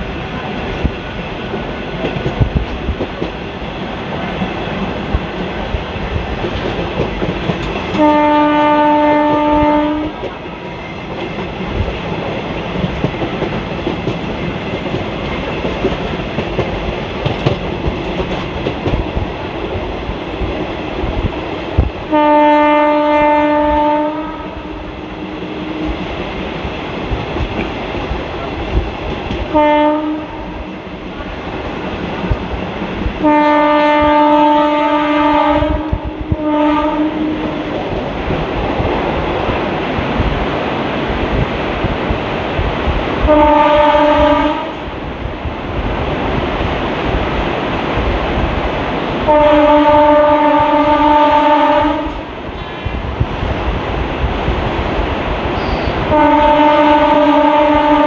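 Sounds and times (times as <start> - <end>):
train wheels clickety-clack: 0.0 - 58.0
locomotive horn blasts: 7.9 - 10.2, 22.1 - 24.8, 29.5 - 30.5, 33.2 - 37.6, 43.3 - 44.8, 49.3 - 52.2, 55.6 - 58.0.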